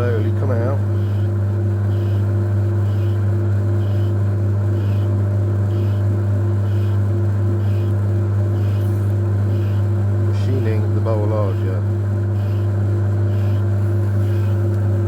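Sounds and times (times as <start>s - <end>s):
metal lathe running: 0.0s - 15.0s
faint pulse: 4.8s - 5.1s, 5.7s - 7.0s, 8.6s - 9.9s, 12.3s - 14.6s.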